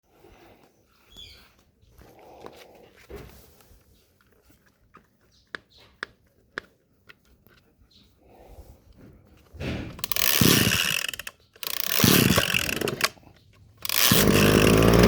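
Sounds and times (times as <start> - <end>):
sharp clicks: 10.0 - 15.0.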